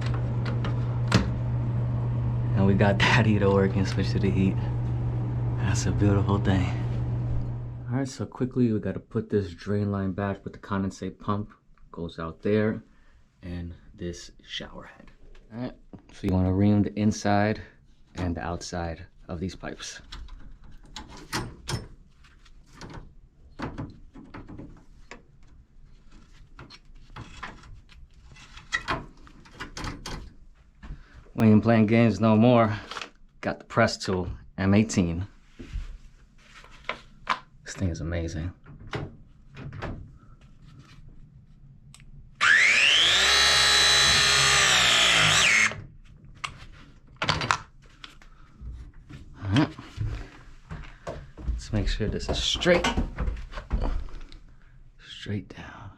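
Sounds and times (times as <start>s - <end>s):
press tool motor whine: 0.0s - 7.9s, 42.4s - 45.8s.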